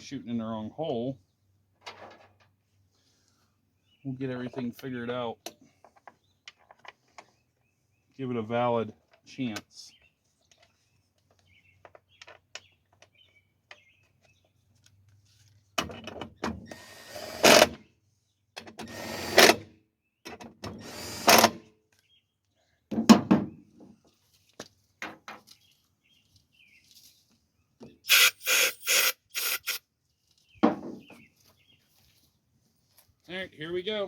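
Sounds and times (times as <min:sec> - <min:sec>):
power drill running: 0:18.8 - 0:19.6, 0:20.8 - 0:21.6, 0:28.1 - 0:29.8.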